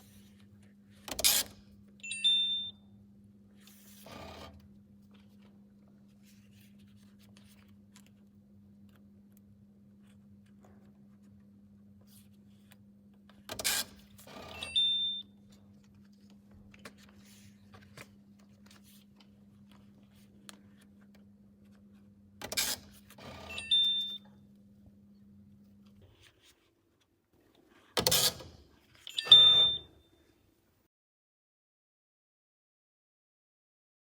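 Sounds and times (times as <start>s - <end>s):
short mechanical rasp: 28.0s - 28.6s
ticket validator click: 28.0s - 29.9s
high electronic beep: 29.1s - 29.9s.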